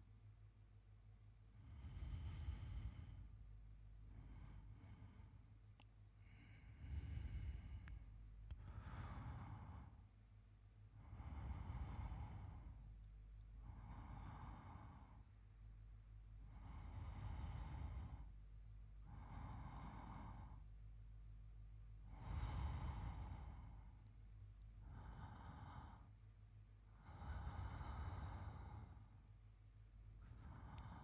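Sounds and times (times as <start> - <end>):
man's slow sleep breathing: 1.5 - 10.2, 10.9 - 15.4, 16.4 - 18.4, 19.0 - 20.8, 22.0 - 24.2, 24.8 - 29.4, 30.1 - 31.0.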